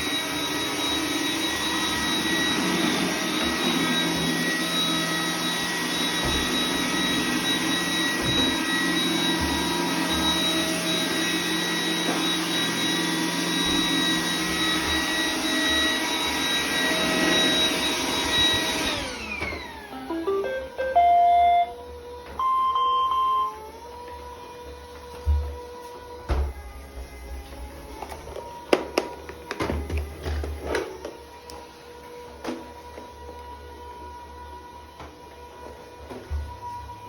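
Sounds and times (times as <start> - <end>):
robot vacuum running: 0.0 - 26.2
short electronic beeps: 22.4 - 23.6.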